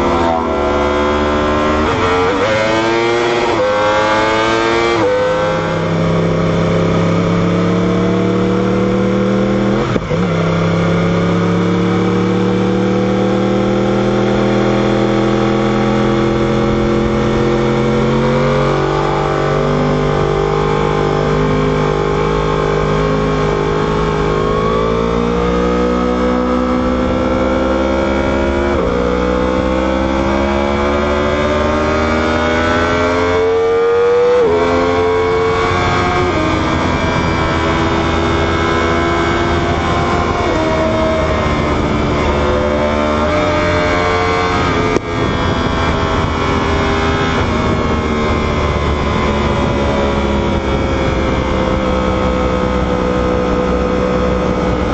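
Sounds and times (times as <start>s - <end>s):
motorcycle engine accelerating: 0.0s - 54.9s.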